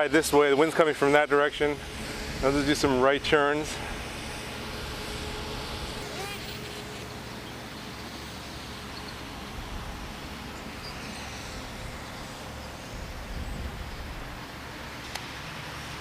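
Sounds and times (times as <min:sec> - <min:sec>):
low rumble gusts: 0:09.4 - 0:14.6
wind buffeting microphone: 0:12.9 - 0:14.5.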